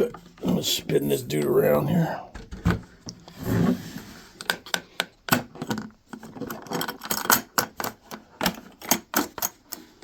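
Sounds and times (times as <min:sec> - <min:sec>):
plastic case scraping: 0:02.4 - 0:04.4.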